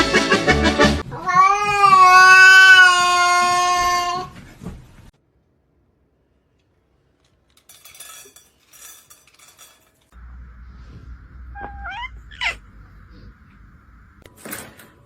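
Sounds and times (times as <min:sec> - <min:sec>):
hard objects clinking and rattling: 0:07.2 - 0:10.2
steady hum: 0:09.8 - 0:14.3
rising squeaky call: 0:11.6 - 0:12.6.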